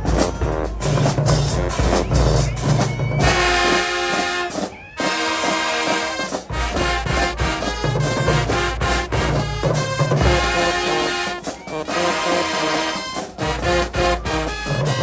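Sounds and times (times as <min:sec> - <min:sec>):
marching band playing: 0:00.0 - 0:15.0.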